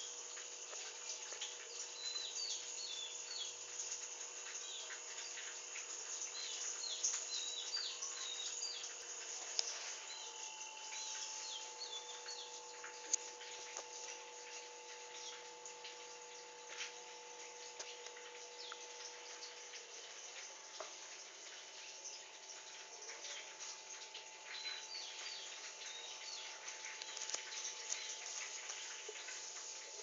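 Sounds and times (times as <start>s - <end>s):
small birds chirping: 0.0s - 15.4s, 18.4s - 20.3s, 24.4s - 29.9s
steady hiss: 0.0s - 30.0s.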